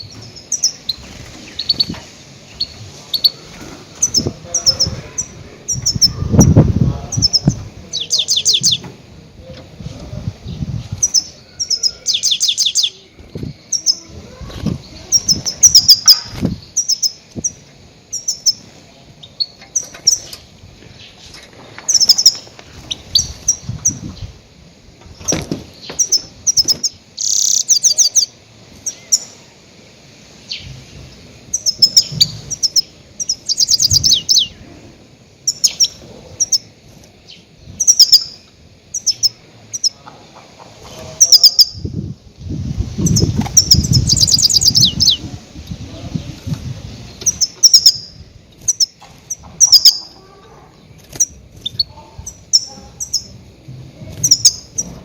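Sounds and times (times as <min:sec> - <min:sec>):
goldfinch twittering calls: 0:00.0 - 0:08.9, 0:11.0 - 0:14.1, 0:14.8 - 0:18.6, 0:21.9 - 0:24.3, 0:25.2 - 0:29.4, 0:31.5 - 0:34.6, 0:35.4 - 0:36.7, 0:37.3 - 0:40.0, 0:41.2 - 0:41.9, 0:43.0 - 0:45.3, 0:47.1 - 0:50.2, 0:50.9 - 0:53.4, 0:54.1 - 0:55.0.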